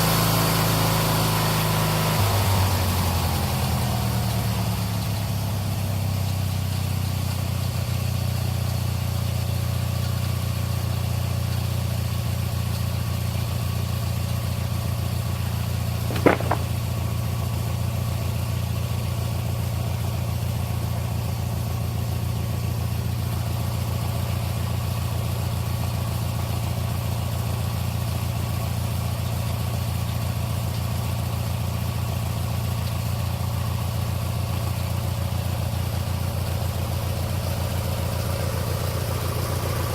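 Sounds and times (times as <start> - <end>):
small engine running: 12.9 - 16.9
sharp double knock: 16.1 - 16.8.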